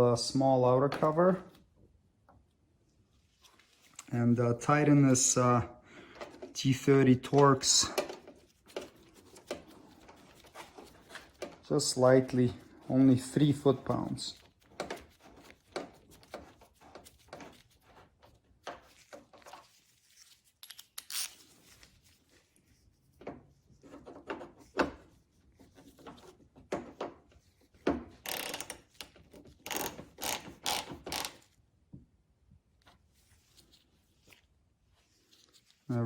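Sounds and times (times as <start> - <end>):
mechanical clicking and ratcheting: 28.3 - 28.8, 29.6 - 31.4.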